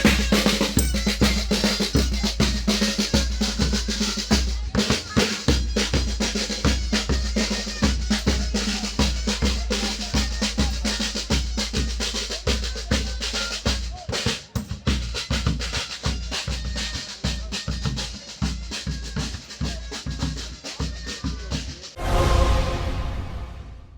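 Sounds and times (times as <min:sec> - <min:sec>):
drum ensemble playing fast rhythm: 0:00.0 - 0:23.5.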